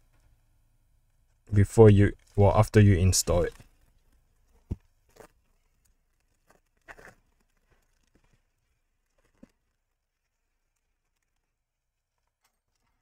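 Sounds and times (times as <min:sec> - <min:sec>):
packaging rustling: 0:03.5 - 0:13.0.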